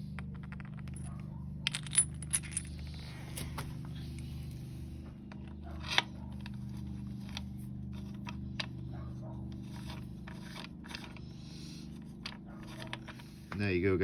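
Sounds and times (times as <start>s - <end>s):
steady low hum: 0.0s - 14.0s
allen key metallic clicks and scrapes: 5.3s - 13.5s.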